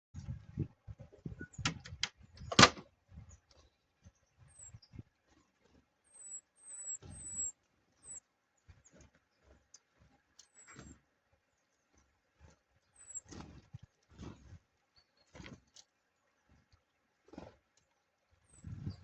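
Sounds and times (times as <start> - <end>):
sharp clicks and knocks: 1.6 - 2.9
small birds high calls: 3.2 - 5.0, 6.0 - 11.0, 11.6 - 13.7.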